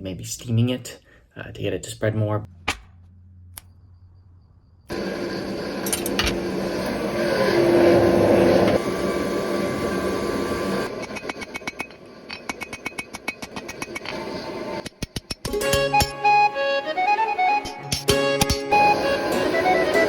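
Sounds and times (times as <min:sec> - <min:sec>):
forge rushing and humming: 0:04.9 - 0:15.2
hammer striking hot steel: 0:10.8 - 0:16.1.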